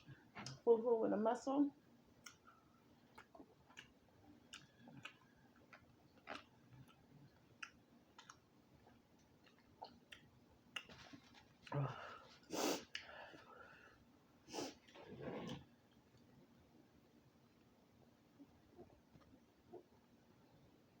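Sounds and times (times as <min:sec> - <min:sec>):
wet chewing: 0:02.2 - 0:11.8.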